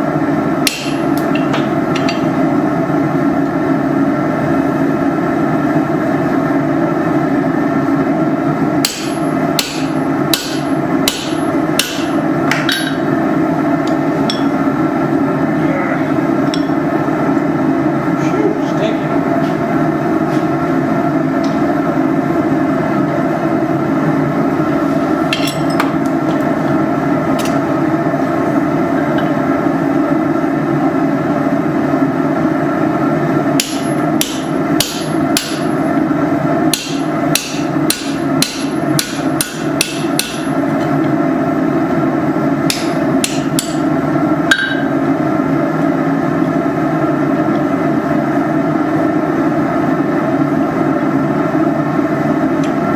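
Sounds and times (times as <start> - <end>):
droning background: 0.0 - 52.9
hammer ringing on anvil: 0.6 - 2.3, 8.8 - 13.1, 13.9 - 14.6, 16.5 - 16.8, 25.4 - 25.9, 33.6 - 35.8, 36.7 - 40.6, 42.7 - 43.8, 44.5 - 45.0.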